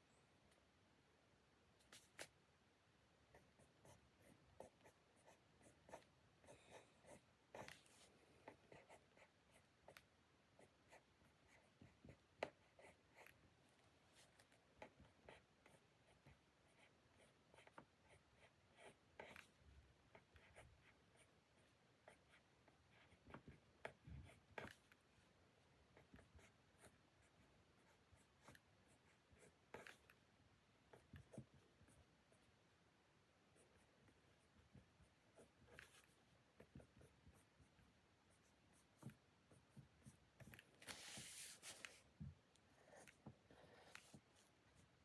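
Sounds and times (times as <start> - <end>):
pen scratching on paper: 3.3 - 13.4, 14.2 - 25.0, 25.9 - 30.2, 33.5 - 42.0, 42.7 - 44.8.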